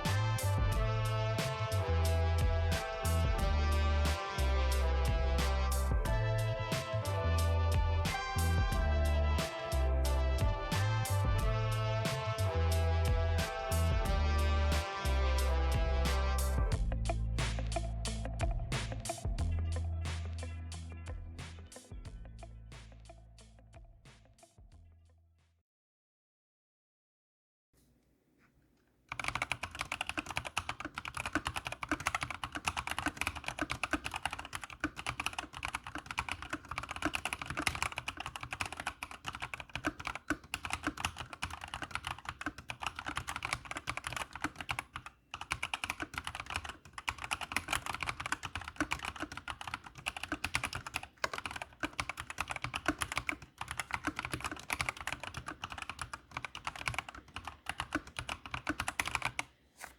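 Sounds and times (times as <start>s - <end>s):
mechanical keyboard typing: 29.1s - 59.5s.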